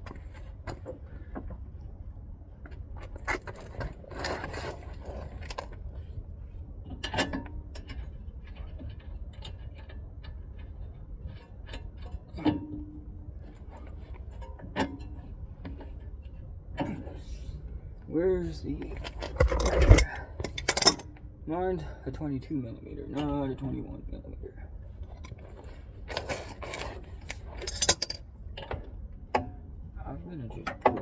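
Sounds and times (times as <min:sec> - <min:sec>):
rustling scrape: 0:03.4 - 0:05.8, 0:25.2 - 0:28.2
metal tools clinking and scraping: 0:18.8 - 0:21.2, 0:25.1 - 0:28.2.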